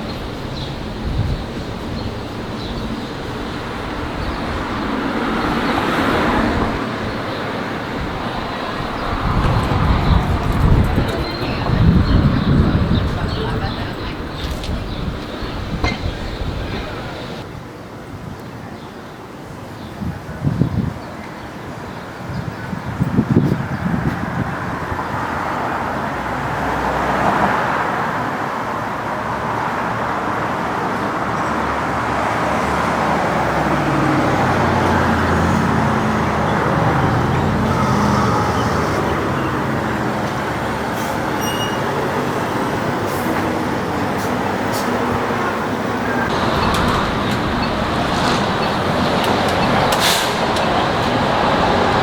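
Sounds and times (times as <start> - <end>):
heavy vehicle engine passing: 0.0 - 17.4, 31.1 - 52.0
road traffic noise: 0.0 - 52.0.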